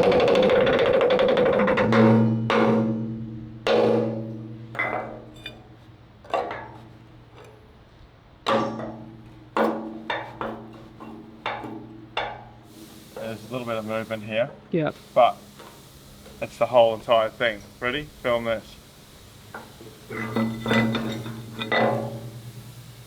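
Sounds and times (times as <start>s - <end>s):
hammer striking steel: 0.0s - 7.6s, 8.5s - 14.2s, 19.4s - 23.0s
steel ringing: 0.0s - 23.0s.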